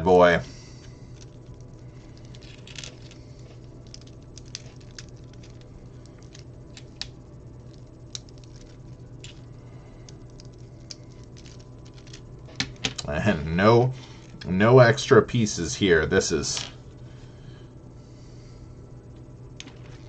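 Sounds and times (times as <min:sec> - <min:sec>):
low hum: 0:00.0 - 0:20.0.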